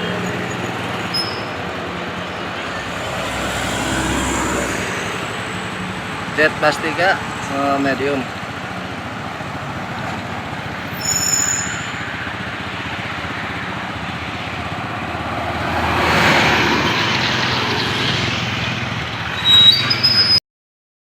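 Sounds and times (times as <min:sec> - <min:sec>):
high-pitched squeal: 0:00.0 - 0:07.6, 0:10.8 - 0:12.4, 0:19.2 - 0:20.4
bus driving past: 0:00.0 - 0:20.4.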